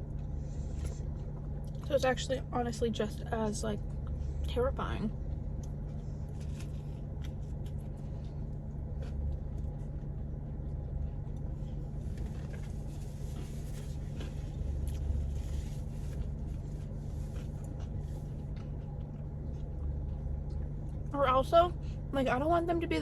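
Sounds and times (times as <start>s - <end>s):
crinkles of eating: 5.1s - 21.1s.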